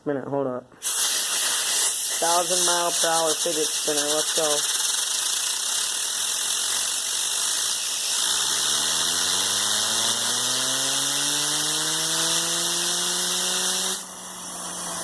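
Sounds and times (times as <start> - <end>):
compressed air hissing: 0.8 - 8.4, 13.3 - 14.9
fidget spinner whirring: 1.3 - 14.8.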